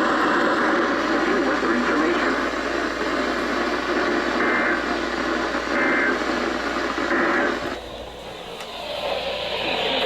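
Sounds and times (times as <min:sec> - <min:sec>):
radio static: 0:00.0 - 0:07.8.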